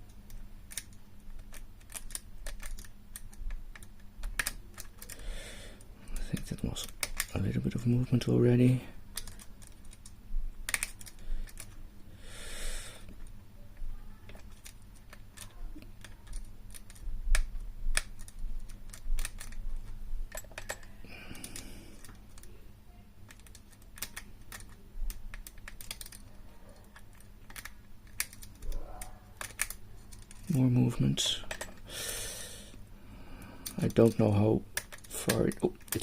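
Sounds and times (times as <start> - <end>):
wire picks clicking in padlock: 0.0 - 5.2, 6.2 - 7.4, 9.1 - 11.8, 14.3 - 22.5, 23.3 - 30.6, 33.6 - 36.0.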